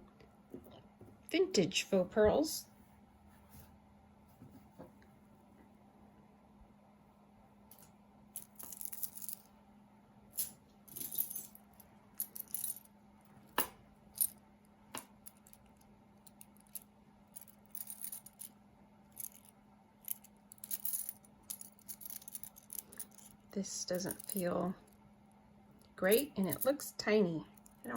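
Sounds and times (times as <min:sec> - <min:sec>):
jewelry clinking and jangling: 0:07.7 - 0:09.5, 0:10.3 - 0:25.0, 0:25.8 - 0:26.9, 0:27.5 - 0:27.9.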